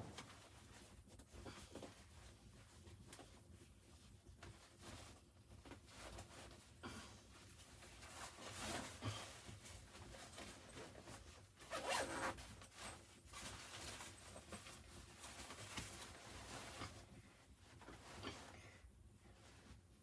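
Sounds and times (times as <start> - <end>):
zipper being pulled: 11.7 - 12.4.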